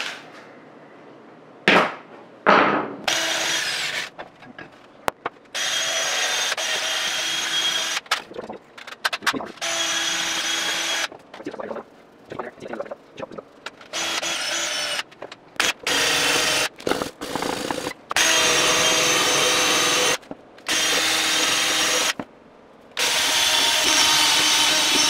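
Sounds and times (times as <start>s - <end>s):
drill with wire wheel on metal: 3.1s - 4.1s, 5.6s - 8.0s, 9.6s - 11.1s, 13.9s - 22.2s, 23.0s - 25.0s.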